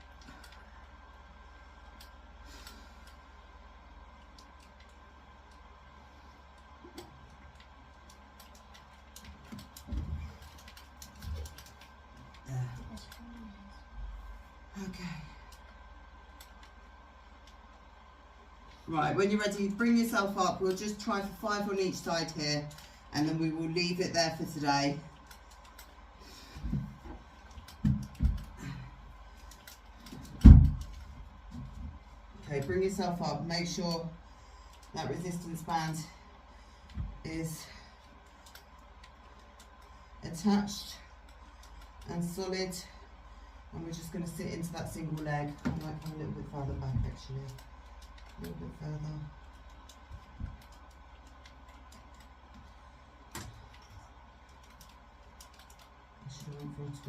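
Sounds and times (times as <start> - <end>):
faint steady hum: 0.0 - 57.0
light ticks and clicks: 44.2 - 57.0.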